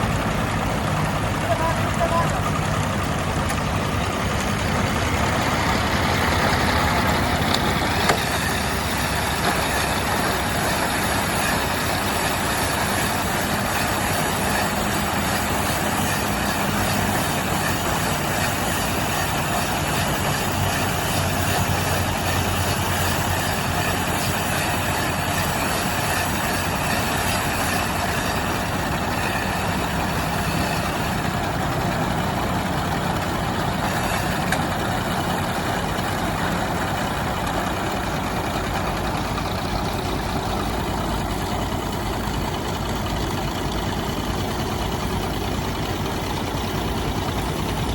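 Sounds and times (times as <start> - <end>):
silage machine running: 0.0 - 47.9.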